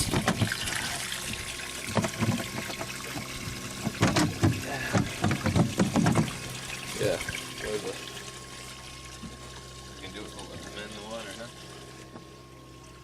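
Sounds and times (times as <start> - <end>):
knocks on boat: 0.0 - 0.6, 1.8 - 6.4
water pouring and trickling: 0.0 - 13.0.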